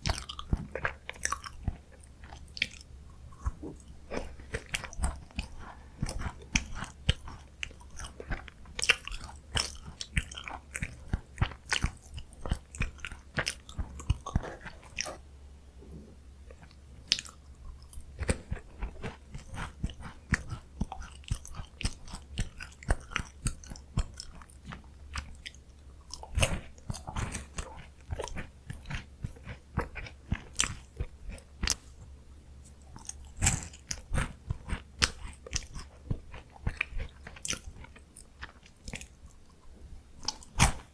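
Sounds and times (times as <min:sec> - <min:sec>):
crunching and chewing biscuits: 0:00.0 - 0:15.2, 0:16.4 - 0:40.9.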